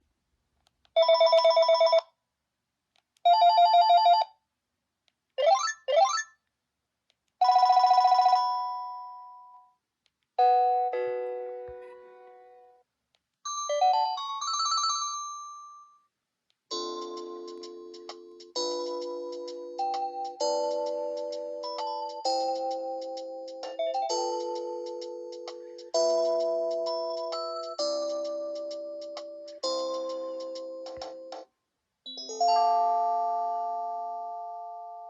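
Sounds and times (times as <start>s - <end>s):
melodic chime tunes: 32.1s - 34.8s.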